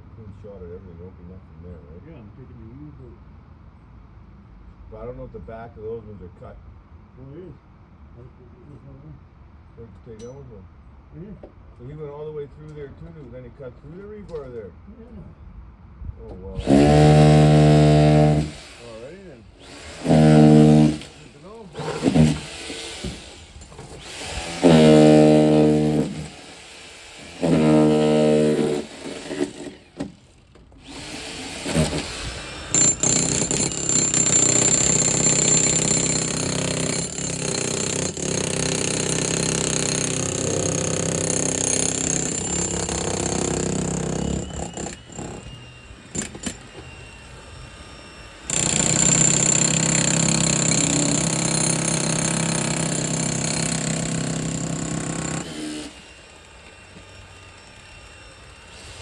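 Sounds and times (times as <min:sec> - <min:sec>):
jackhammer breaking concrete: 0:16.6 - 0:19.0, 0:19.9 - 0:26.6, 0:27.2 - 0:30.1, 0:31.0 - 0:46.9, 0:48.4 - 0:59.0.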